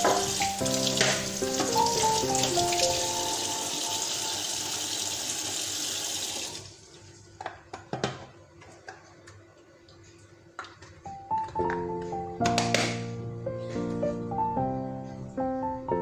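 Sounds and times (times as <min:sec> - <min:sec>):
water running: 0:00.0 - 0:07.3.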